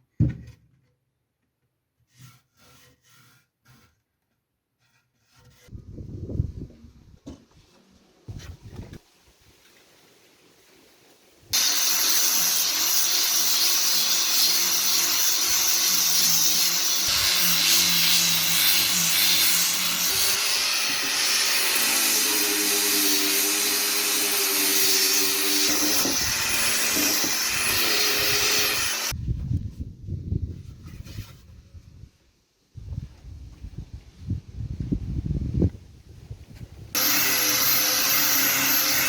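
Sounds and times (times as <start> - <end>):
electric power tool cutting wood: 11.6 - 29.1, 37.0 - 39.0.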